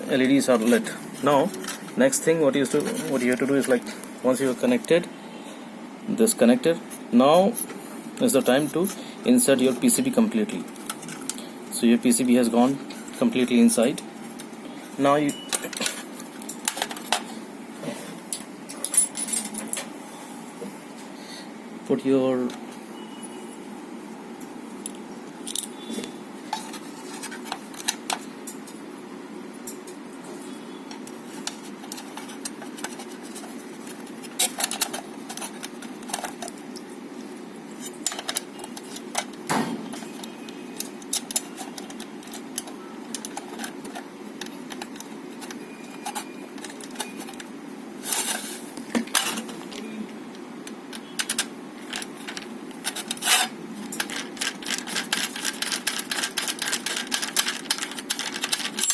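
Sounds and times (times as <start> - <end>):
steady background hum: 0.0 - 58.9
plastic and metal parts clicking: 31.0 - 36.6, 38.0 - 47.5, 50.9 - 58.9.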